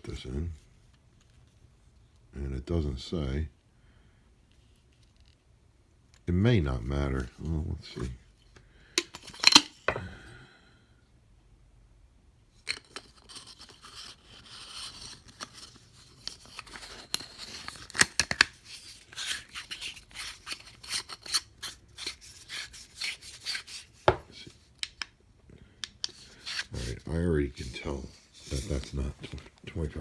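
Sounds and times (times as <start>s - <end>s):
battery carrier clicking and scraping: 9.0s - 10.0s, 12.7s - 25.0s, 25.8s - 27.0s.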